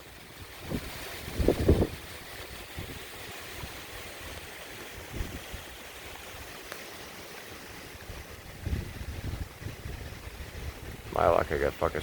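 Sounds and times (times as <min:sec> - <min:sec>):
wind gusts buffeting microphone: 0:00.3 - 0:05.8, 0:07.9 - 0:12.0
strong wind blowing: 0:00.4 - 0:05.8, 0:08.0 - 0:12.0.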